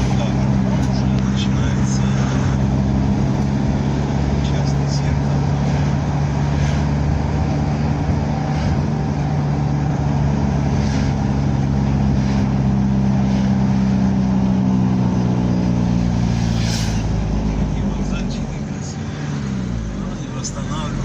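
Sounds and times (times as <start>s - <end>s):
car engine running: 0.0s - 21.0s
tyre and road noise: 0.0s - 21.0s.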